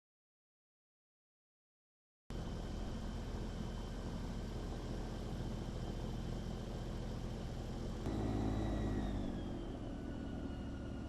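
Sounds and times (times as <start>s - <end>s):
vehicle engine humming: 2.3s - 11.0s
faint high whine: 8.0s - 11.0s.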